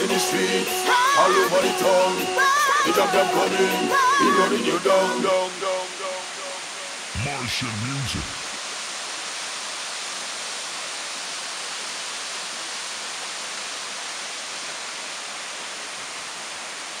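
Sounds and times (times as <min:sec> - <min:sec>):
waterfall rushing: 0:03.9 - 0:17.0.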